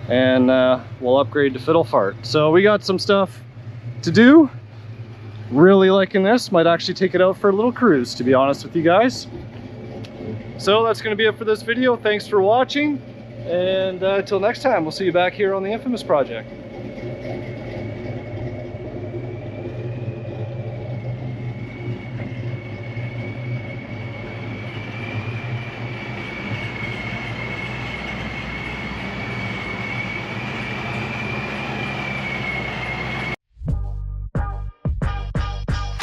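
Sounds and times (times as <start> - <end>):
car engine running: 0.0 - 33.4
high-pitched whine: 0.0 - 33.4.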